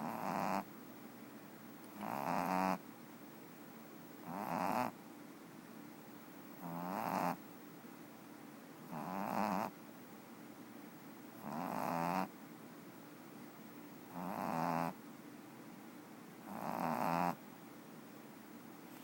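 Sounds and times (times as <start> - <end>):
puppy snoring: 0.0 - 0.7, 1.9 - 2.8, 4.2 - 5.0, 6.6 - 7.4, 8.8 - 9.8, 11.4 - 12.3, 14.1 - 15.0, 16.4 - 17.4.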